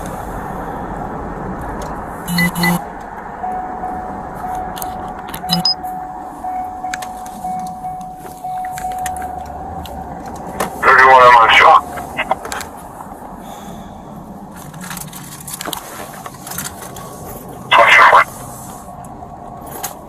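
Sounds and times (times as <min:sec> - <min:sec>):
motor vehicle running: 0:00.0 - 0:20.0
short beeps: 0:02.3 - 0:02.8, 0:03.4 - 0:09.4
faint steady tone: 0:03.4 - 0:10.1.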